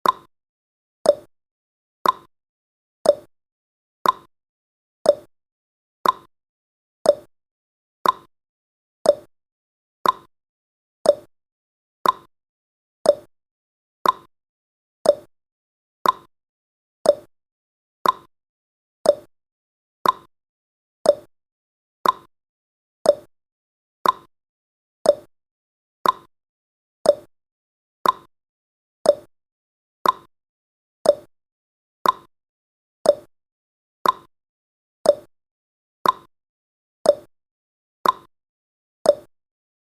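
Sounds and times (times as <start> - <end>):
timer ticking: 0.0 - 0.3, 1.1 - 1.3, 2.0 - 2.3, 3.0 - 3.3, 4.0 - 4.3, 5.1 - 5.3, 6.0 - 6.3, 7.0 - 7.3, 8.0 - 8.3, 9.0 - 9.3, 10.0 - 10.3, 11.0 - 11.3, 12.0 - 12.3, 13.0 - 13.3, 14.0 - 14.3, 15.0 - 15.3, 16.0 - 16.3, 17.0 - 17.3, 18.0 - 18.3, 19.0 - 19.3, 20.0 - 20.3, 21.0 - 21.3, 22.0 - 22.3, 23.0 - 23.3, 24.0 - 24.3, 25.0 - 25.3, 26.0 - 26.3, 27.0 - 27.3, 28.0 - 28.3, 29.0 - 29.3, 30.0 - 30.3, 31.0 - 31.3, 32.0 - 32.3, 33.0 - 33.3, 34.0 - 34.3, 35.0 - 35.3, 36.0 - 36.3, 37.1 - 37.3, 38.0 - 38.3, 39.1 - 39.3.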